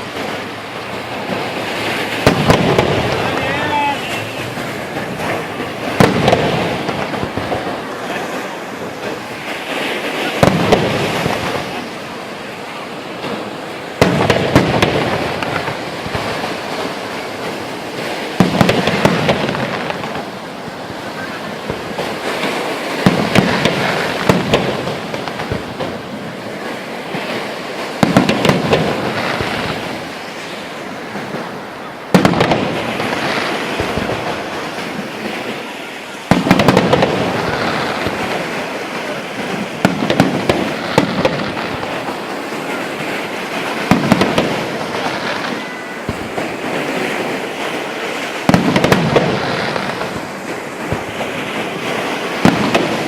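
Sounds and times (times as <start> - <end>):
firework bursts: 0.0 - 53.0
firework crackling: 0.0 - 53.0.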